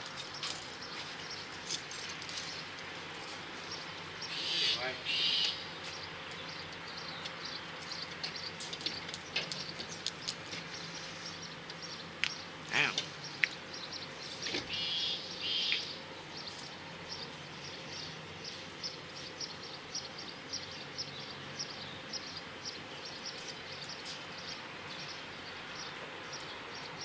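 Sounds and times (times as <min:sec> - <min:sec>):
louder chirping calls: 0:04.2 - 0:05.7, 0:12.7 - 0:13.4.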